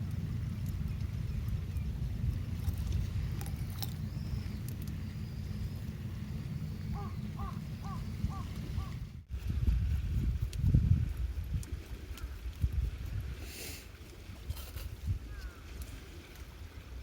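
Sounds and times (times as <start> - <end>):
wind rumble on microphone: 0.0 - 17.0
crow cawing: 7.0 - 8.9.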